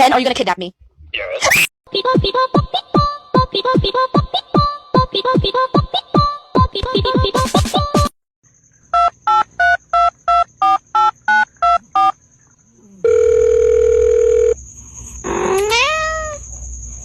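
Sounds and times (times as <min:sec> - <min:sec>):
steady phone tone: 0:13.0 - 0:14.6.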